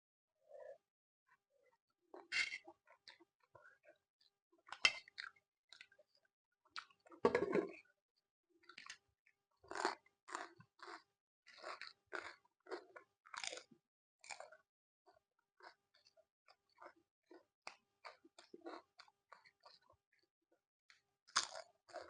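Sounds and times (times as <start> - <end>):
person chewing noodles: 9.7 - 14.6, 15.6 - 19.9, 20.9 - 22.0.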